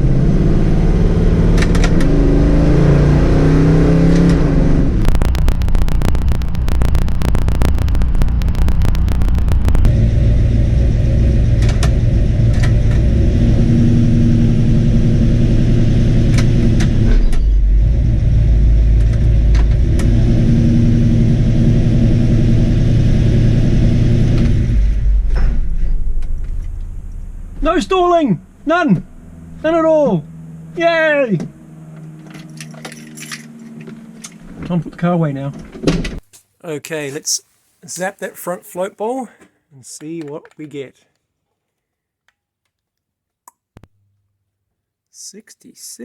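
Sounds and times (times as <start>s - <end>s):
car engine running: 0.0s - 34.6s.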